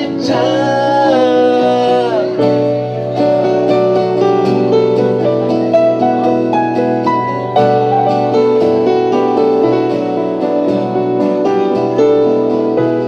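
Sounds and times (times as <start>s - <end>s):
person singing: 0.0s - 3.1s
plucked strings and piano: 0.0s - 13.0s.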